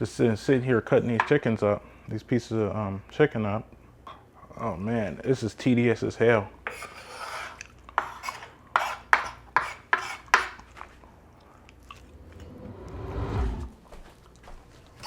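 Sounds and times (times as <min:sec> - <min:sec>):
knife scraping bones: 0:06.7 - 0:10.7
low rushing sound: 0:11.8 - 0:13.9.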